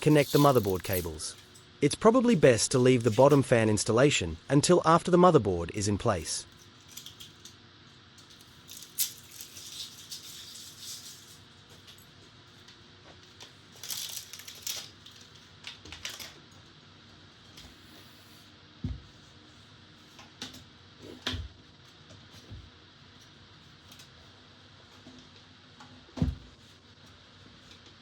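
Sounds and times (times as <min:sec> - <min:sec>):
plastic rustling: 0:13.7 - 0:16.4.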